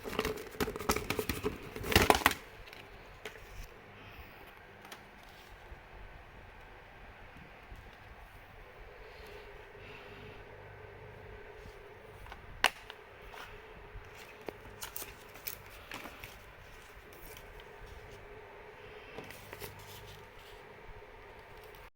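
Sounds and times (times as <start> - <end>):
plastic case clicking: 0.0 - 3.4
plastic case rustling: 0.0 - 3.7, 12.1 - 18.3, 19.1 - 20.6
faint steady hum: 0.0 - 21.9.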